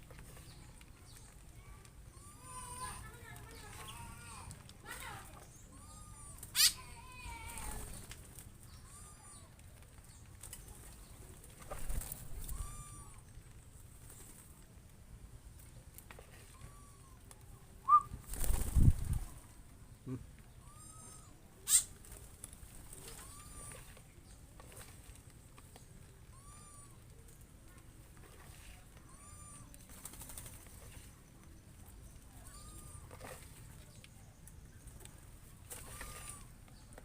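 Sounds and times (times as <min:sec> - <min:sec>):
birds chirping: 0:00.0 - 0:14.6, 0:16.5 - 0:17.2, 0:20.0 - 0:27.4, 0:28.8 - 0:37.0
sharp high bird calls: 0:12.4 - 0:13.2, 0:20.6 - 0:21.9, 0:26.3 - 0:26.9.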